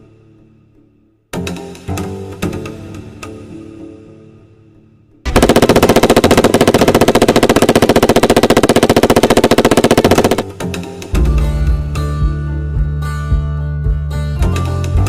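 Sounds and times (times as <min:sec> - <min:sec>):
background music: 0:00.0 - 0:15.0
machine gun automatic burst: 0:05.3 - 0:10.6.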